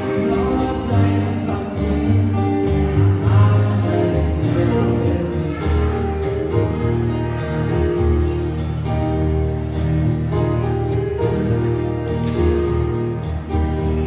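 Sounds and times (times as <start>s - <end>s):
person singing: 0.0s - 7.6s.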